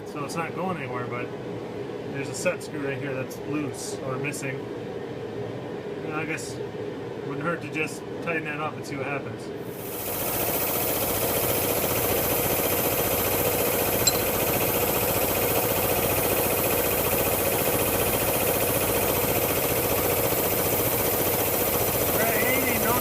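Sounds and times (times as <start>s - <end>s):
air compressor running: 9.6s - 23.0s
sharp click: 14.0s - 14.3s.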